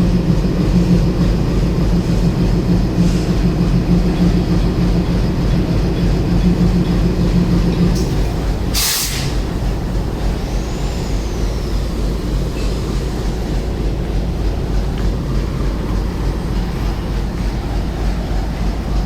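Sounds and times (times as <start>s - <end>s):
train locomotive humming: 0.0s - 19.0s
air brake hiss: 8.0s - 9.6s.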